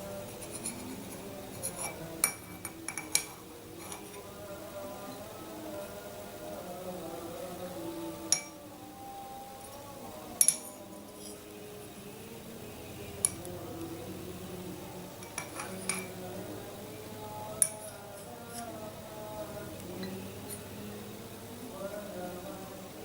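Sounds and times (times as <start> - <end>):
soft background music: 0.0 - 23.0
metal spoon clinking on glass: 1.6 - 4.2, 8.3 - 8.6, 10.4 - 11.4, 15.2 - 16.2.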